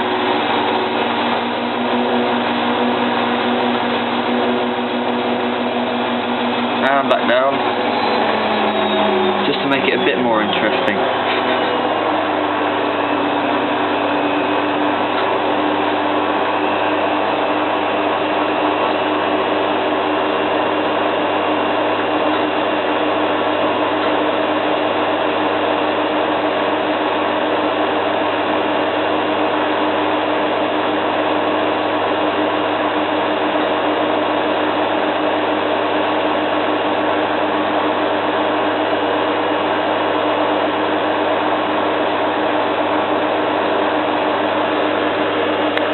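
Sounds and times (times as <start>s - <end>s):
constant hum: 0.0s - 19.0s
washing machine spinning: 0.0s - 45.9s.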